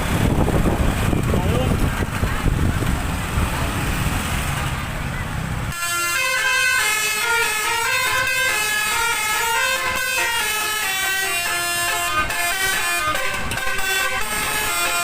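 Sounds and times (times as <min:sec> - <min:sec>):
low engine and street rumble: 0:00.0 - 0:15.0
multi-tone bus air horn melody: 0:05.7 - 0:15.0.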